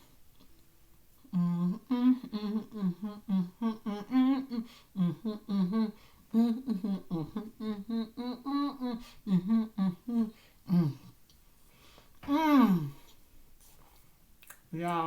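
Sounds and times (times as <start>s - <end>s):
woman humming: 1.2s - 11.2s, 12.2s - 13.1s.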